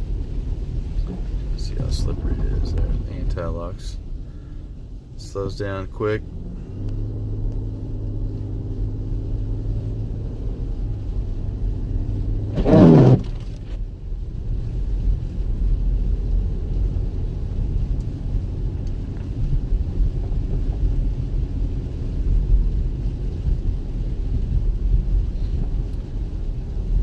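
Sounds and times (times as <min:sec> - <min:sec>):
engine and tyres rumble: 0:00.0 - 0:27.0.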